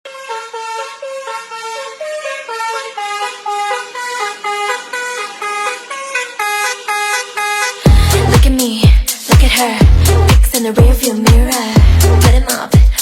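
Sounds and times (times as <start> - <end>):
honking horn-like tune: 0.1 - 8.4.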